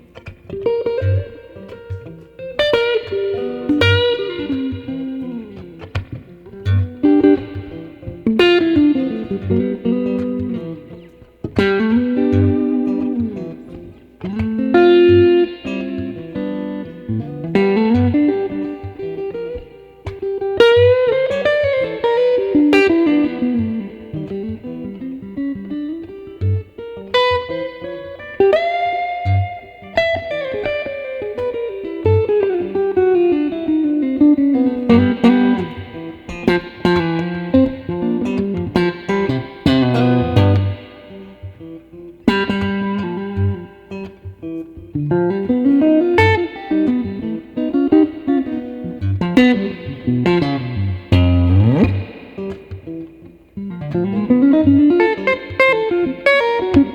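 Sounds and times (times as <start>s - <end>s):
clean electric guitar lead: 0.0s - 56.9s.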